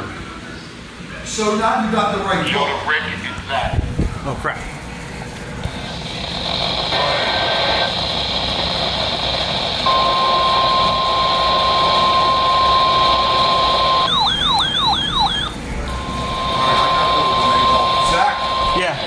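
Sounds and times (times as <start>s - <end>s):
radio hiss: 5.0s - 14.2s, 14.9s - 19.0s
fast siren-like warble: 9.9s - 19.0s
steady single-pitch alert tone: 9.9s - 19.0s.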